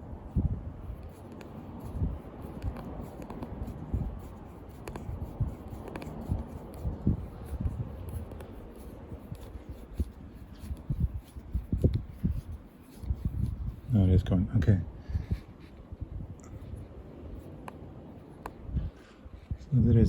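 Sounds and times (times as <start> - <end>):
plastic applicator rubbing and clicking: 0.0 - 13.9.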